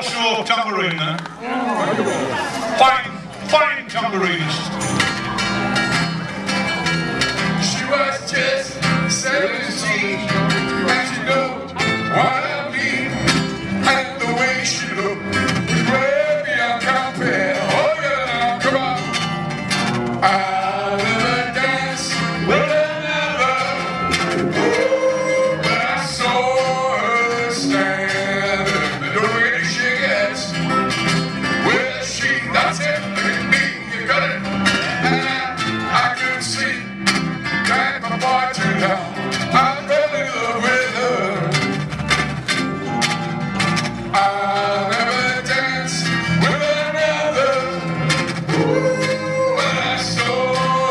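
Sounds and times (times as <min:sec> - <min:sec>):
live band music: 0:02.2 - 0:50.9.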